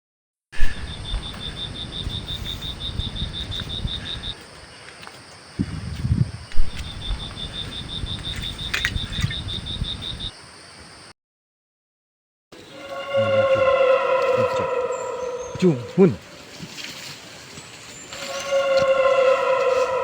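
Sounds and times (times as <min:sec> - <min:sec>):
low microphone rumble: 0:00.6 - 0:04.3, 0:05.6 - 0:10.3
high rhythmic chirping call: 0:00.6 - 0:04.4, 0:06.6 - 0:10.3, 0:12.6 - 0:16.9.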